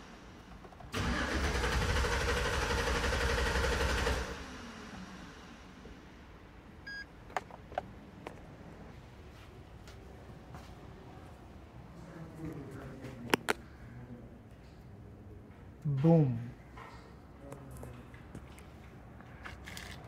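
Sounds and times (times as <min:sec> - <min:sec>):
engine cranking: 0:00.7 - 0:04.6
short electronic beep: 0:06.9 - 0:07.1.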